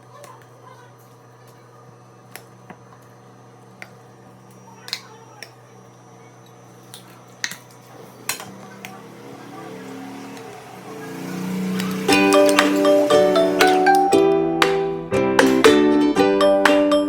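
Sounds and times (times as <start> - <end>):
steady low hum: 0.0 - 14.2
utensils clinking on dishes: 11.3 - 14.1.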